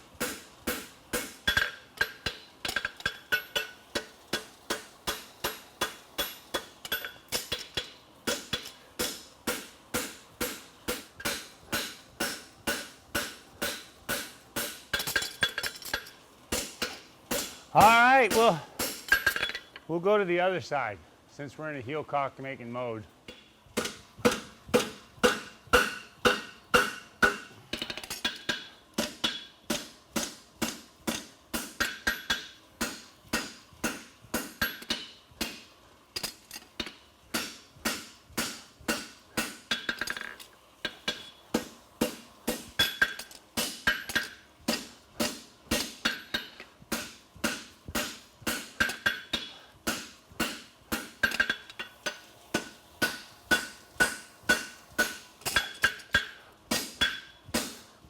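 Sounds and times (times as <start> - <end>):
hammer ringing on anvil: 23.3 - 27.6, 42.5 - 57.7.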